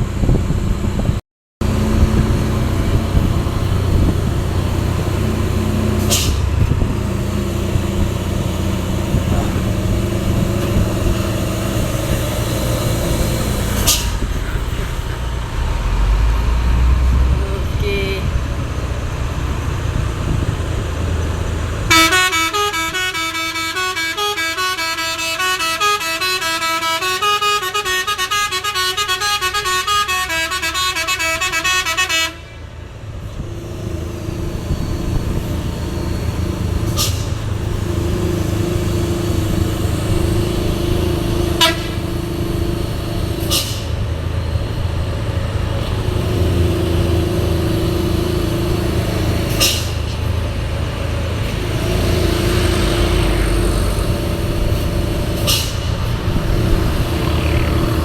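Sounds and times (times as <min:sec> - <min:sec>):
truck engine running: 0:00.0 - 0:58.0
multi-tone horn melody: 0:21.9 - 0:32.5, 0:41.6 - 0:42.0.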